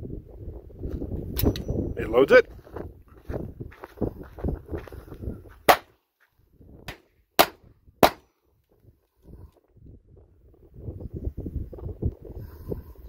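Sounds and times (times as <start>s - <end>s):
blank pistol shots: 5.7s - 5.9s, 6.9s - 8.3s.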